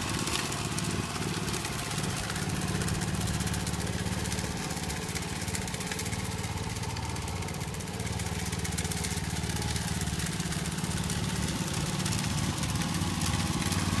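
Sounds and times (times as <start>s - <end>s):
small engine running: 0.0s - 14.0s.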